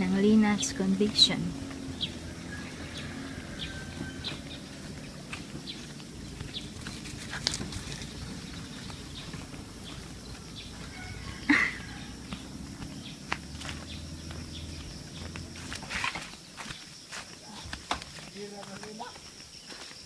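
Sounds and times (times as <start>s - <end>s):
animal call: 10.4s - 13.2s.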